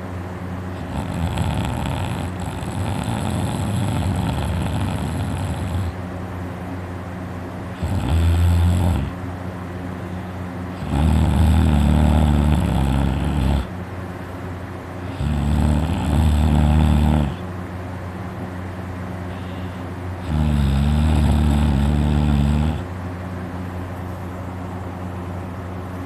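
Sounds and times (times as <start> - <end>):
person snoring loudly: 0.8 - 6.0, 7.7 - 9.2, 10.8 - 13.7, 15.0 - 17.5, 20.2 - 22.9.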